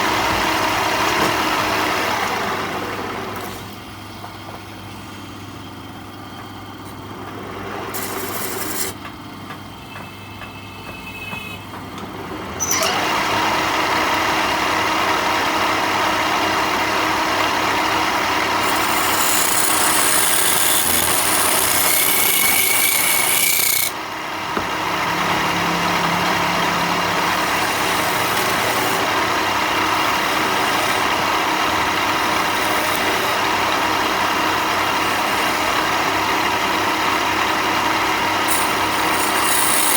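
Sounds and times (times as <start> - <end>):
power tool cutting wood: 7.9 - 9.0, 16.7 - 24.1, 25.0 - 39.9.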